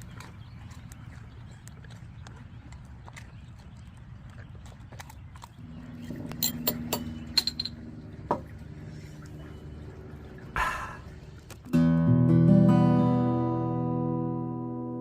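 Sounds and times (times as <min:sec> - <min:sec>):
low steady hum: 0:00.0 - 0:11.7
sharp clicks and clinks: 0:06.3 - 0:07.8.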